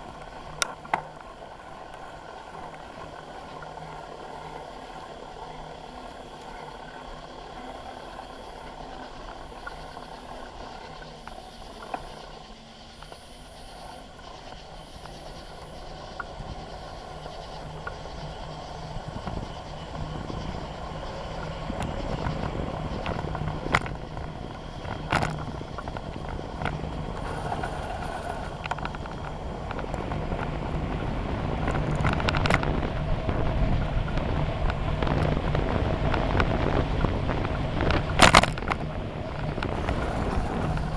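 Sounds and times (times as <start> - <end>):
bicycle rolling noise: 0.0 - 40.9
insect chirps: 0.0 - 40.9
bicycle clicks and rattles: 17.7 - 40.9.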